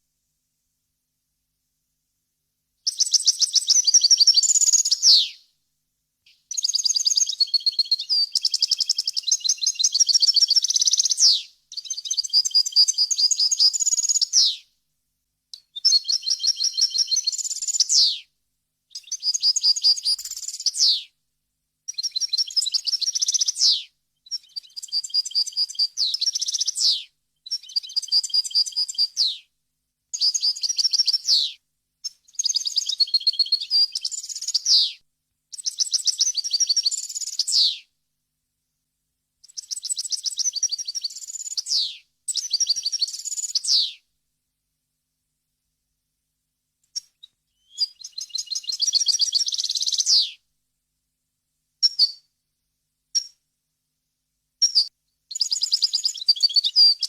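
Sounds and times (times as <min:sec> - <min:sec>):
goldfinch twittering song: 0:47.6 - 0:50.3.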